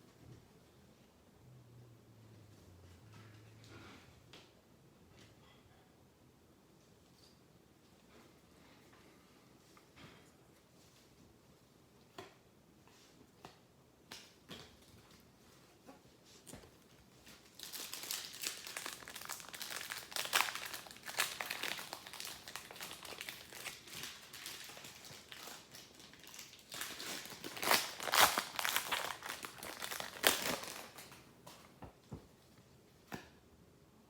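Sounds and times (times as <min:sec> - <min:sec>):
foil wrapper crinkling: 0:17.3 - 0:31.3.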